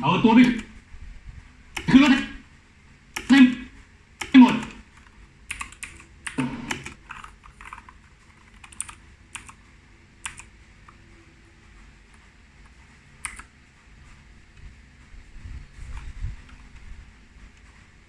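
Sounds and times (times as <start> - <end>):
mechanical keyboard keys clacking: 4.2 - 9.6, 10.2 - 10.5, 13.2 - 13.5.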